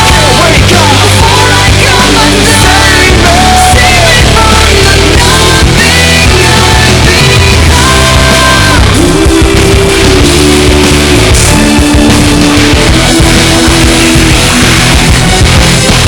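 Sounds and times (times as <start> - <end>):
loud rock music: 0.0 - 16.0.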